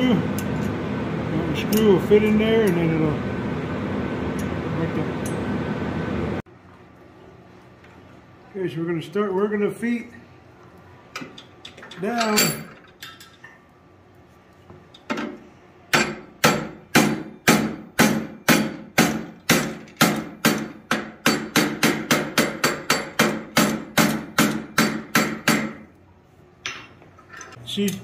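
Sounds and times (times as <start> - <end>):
hammer striking steel on anvil: 15.9 - 25.8.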